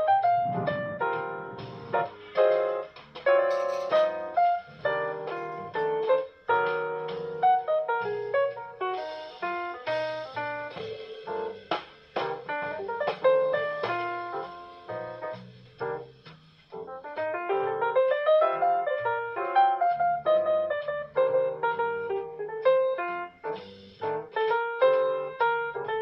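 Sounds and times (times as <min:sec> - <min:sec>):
piano melody: 0:00.0 - 0:16.1, 0:16.7 - 0:26.0.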